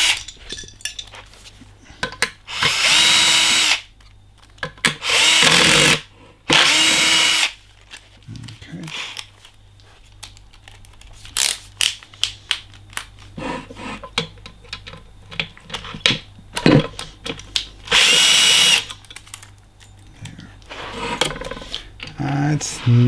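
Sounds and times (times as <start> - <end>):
power drill spinning: 2.5 - 3.8, 5.0 - 7.5, 17.9 - 18.9.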